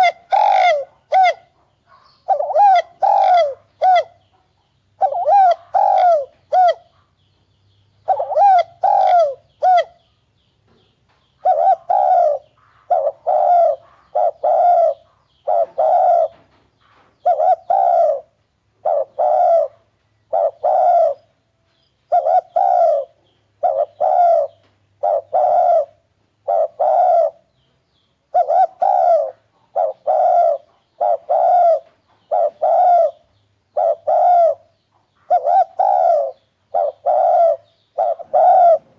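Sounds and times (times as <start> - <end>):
dove cooing: 0.0 - 4.4, 5.0 - 7.1, 8.0 - 10.0, 11.4 - 16.6, 17.2 - 21.4, 22.1 - 27.5, 28.3 - 38.9.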